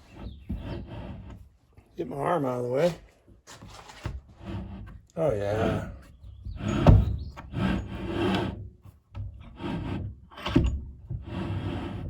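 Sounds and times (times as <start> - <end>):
bench vise screw rasping: 6.5 - 8.6.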